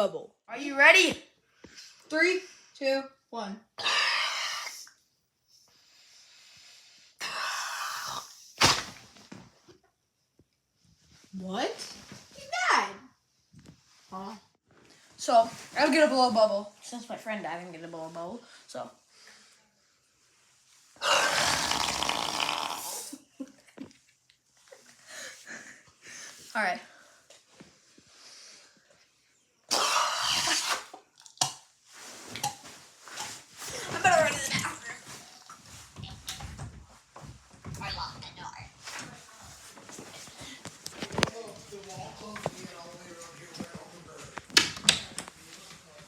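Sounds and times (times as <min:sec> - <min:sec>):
person blowing air hissing: 0:03.8 - 0:04.9, 0:21.0 - 0:23.2, 0:29.7 - 0:31.0
soft breaths: 0:05.5 - 0:07.2, 0:18.2 - 0:21.3, 0:24.6 - 0:29.5, 0:37.0 - 0:44.4
loud rasping fart: 0:21.0 - 0:23.1.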